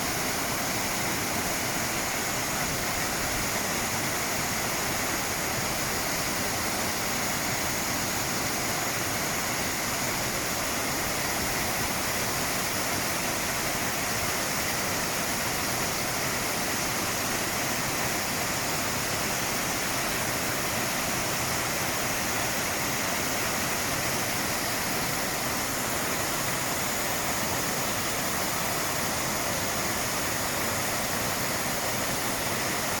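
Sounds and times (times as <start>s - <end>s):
waterfall rushing: 0.0s - 33.0s.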